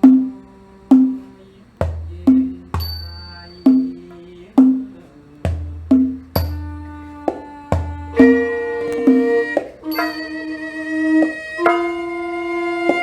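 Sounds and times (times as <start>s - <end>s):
deep drum beats: 0.0s - 10.2s
struck ringing pitched notes: 1.9s - 5.0s, 5.6s - 13.0s
bright high ringing stroke: 2.8s - 4.3s, 8.2s - 12.6s.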